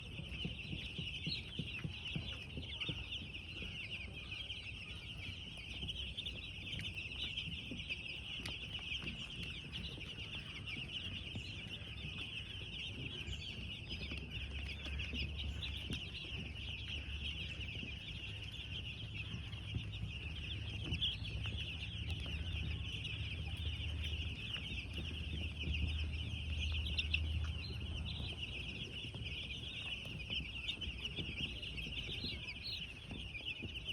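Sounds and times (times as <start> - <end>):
chicks peeping: 0.0 - 33.9.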